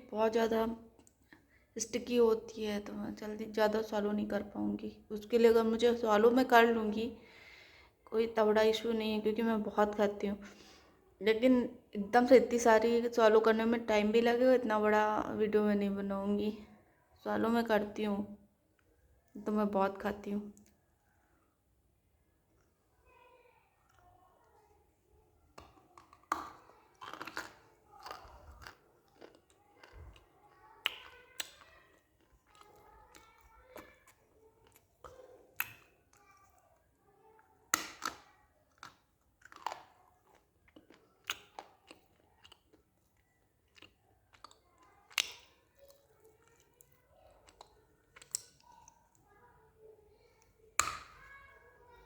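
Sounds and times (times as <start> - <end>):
clay crunching when chewed: 25.5 - 37.0, 37.7 - 49.2
sticky mouth sounds: 25.6 - 36.3.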